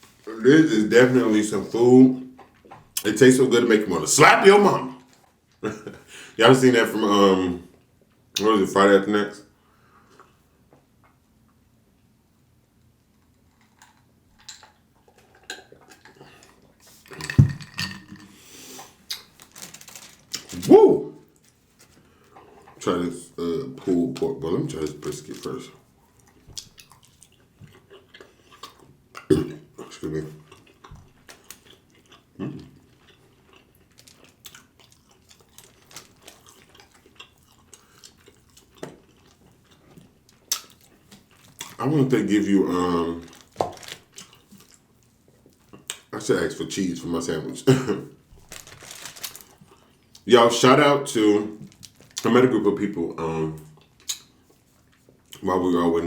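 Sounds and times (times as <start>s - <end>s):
chewing and lip smacks: 13.2s - 16.9s, 26.0s - 41.8s, 43.3s - 46.1s, 53.6s - 55.4s.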